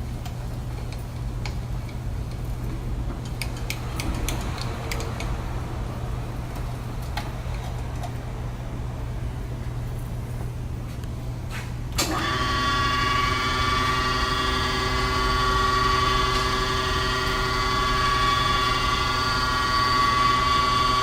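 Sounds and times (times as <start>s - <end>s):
grinder motor whine: 12.1s - 21.0s.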